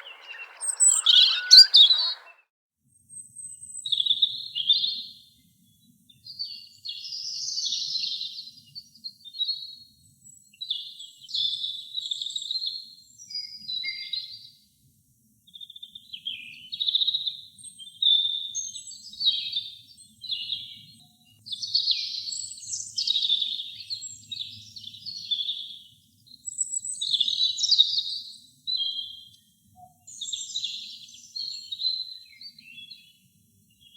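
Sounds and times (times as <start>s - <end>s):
robin singing: 0.0s - 2.4s.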